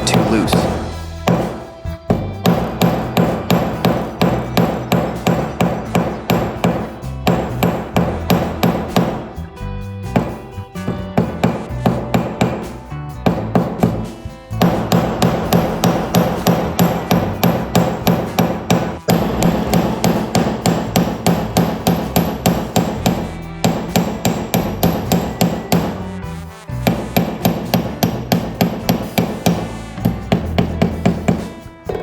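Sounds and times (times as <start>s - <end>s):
hammer striking metal pins: 10.2s - 26.0s, 26.9s - 29.7s.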